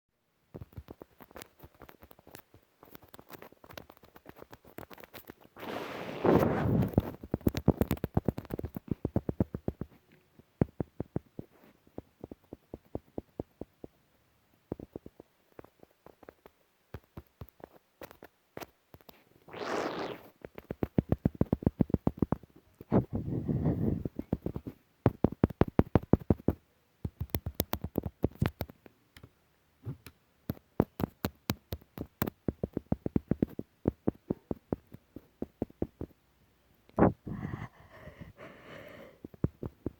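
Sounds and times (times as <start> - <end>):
rough noisy sound: 19.5 - 20.3.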